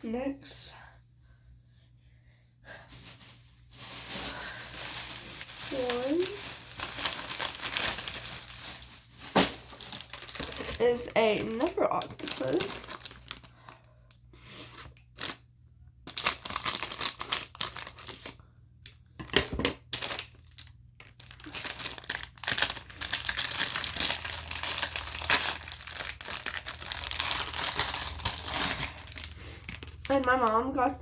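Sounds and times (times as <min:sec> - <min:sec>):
packaging crinkling and tearing: 0:03.0 - 0:14.0, 0:14.6 - 0:15.4, 0:16.1 - 0:30.2.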